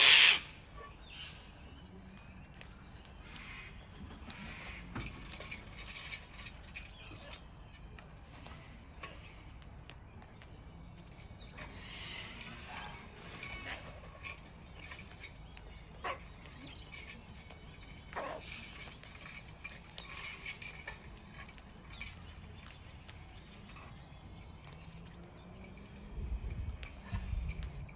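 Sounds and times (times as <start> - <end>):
cockatoos squawking: 0.0 - 0.6
sharp clicks and cracks: 5.2 - 12.6.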